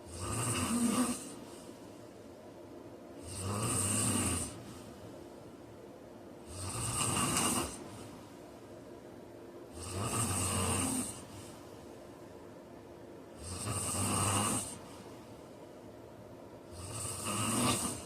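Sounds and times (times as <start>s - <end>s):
man snoring: 0.0s - 1.4s, 3.2s - 4.6s, 6.4s - 7.9s, 9.7s - 11.3s, 13.4s - 14.9s, 16.7s - 18.0s.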